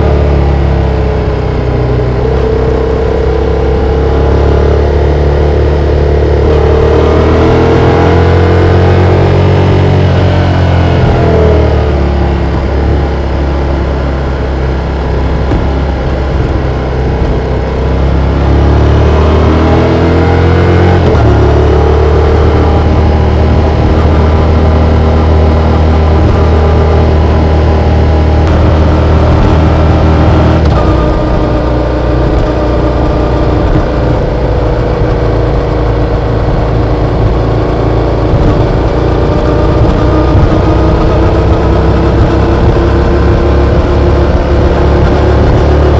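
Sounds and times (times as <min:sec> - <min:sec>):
motorcycle engine accelerating: 0:00.0 - 0:45.9.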